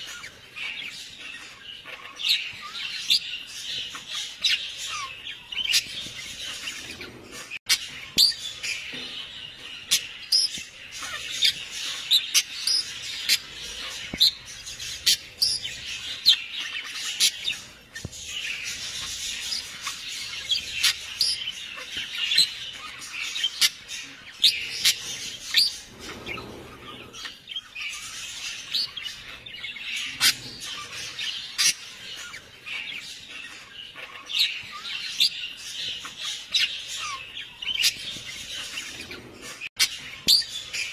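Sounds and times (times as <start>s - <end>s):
birds chirping in chorus: 0.0s - 40.9s.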